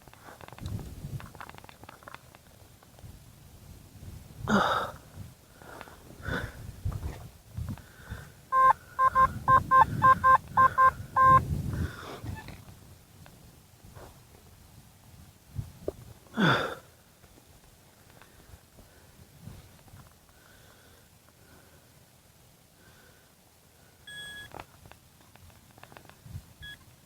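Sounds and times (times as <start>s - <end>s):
metal detector short beeps: 8.6s - 11.4s, 24.1s - 24.5s.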